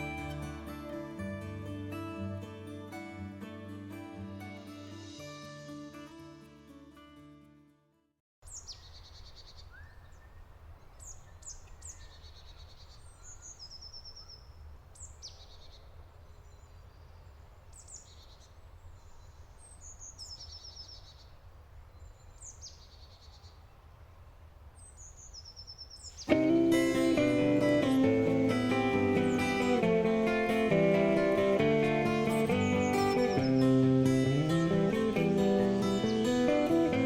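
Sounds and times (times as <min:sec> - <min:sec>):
background music: 0:00.0 - 0:07.6, 0:26.3 - 0:37.0
songbird singing: 0:08.4 - 0:37.0.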